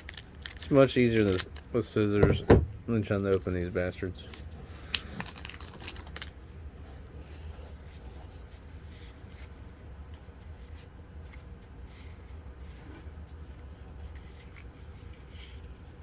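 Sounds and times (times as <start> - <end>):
trading cards rustling: 0.0 - 2.1, 2.9 - 6.4
steady low hum: 0.0 - 16.0.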